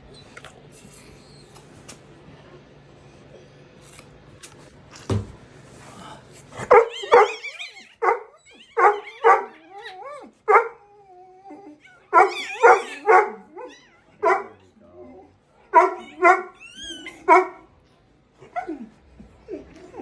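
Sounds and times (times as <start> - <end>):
puppy crying high-pitched: 6.7 - 14.7, 15.8 - 17.5.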